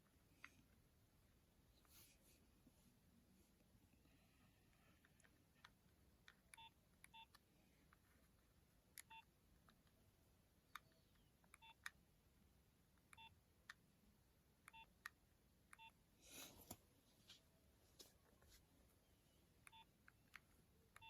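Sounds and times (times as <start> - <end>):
phone key beep: 19.7 - 19.9.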